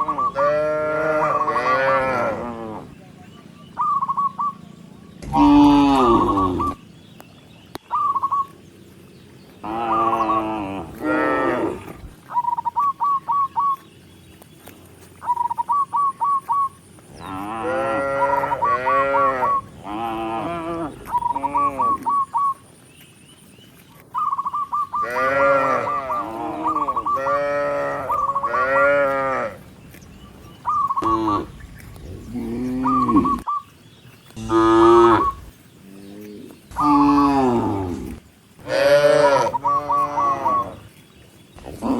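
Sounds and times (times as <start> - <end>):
cattle mooing: 0.0 - 2.9, 5.2 - 6.8, 9.6 - 12.1, 17.2 - 22.1, 25.0 - 29.7, 31.0 - 33.5, 34.4 - 40.9.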